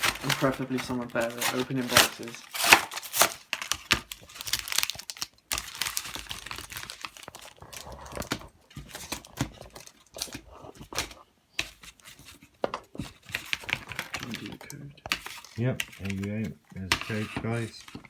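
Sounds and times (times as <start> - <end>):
plastic packaging being torn open: 0.0 - 10.4
crinkling and crackling: 0.0 - 18.0.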